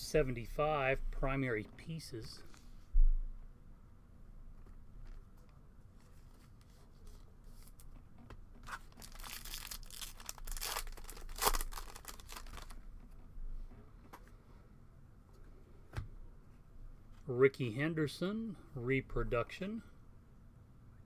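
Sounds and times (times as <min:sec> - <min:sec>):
card pack wrapper tearing: 0:08.6 - 0:12.8.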